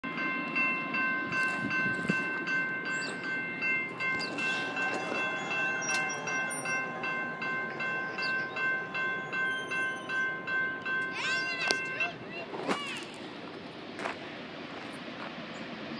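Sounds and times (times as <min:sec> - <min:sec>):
passing train rumble: 0:00.0 - 0:15.9.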